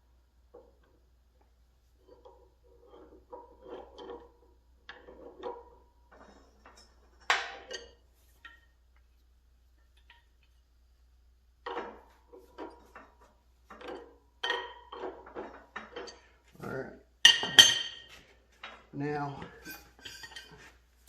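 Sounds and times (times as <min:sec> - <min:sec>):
metal tools clanking: 0:02.1 - 0:08.6, 0:11.6 - 0:20.8.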